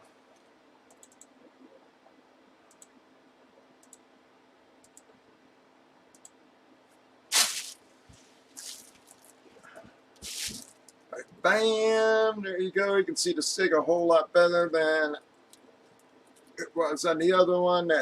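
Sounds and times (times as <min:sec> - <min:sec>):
faint clicks: 0:00.3 - 0:03.0, 0:03.8 - 0:04.1, 0:04.8 - 0:05.2, 0:06.1 - 0:06.4
brushing handling noise: 0:07.3 - 0:09.6.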